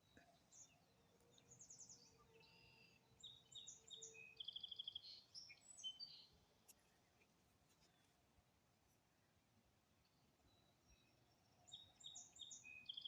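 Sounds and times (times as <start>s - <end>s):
small songbirds singing: 0.0s - 7.2s, 10.0s - 13.0s.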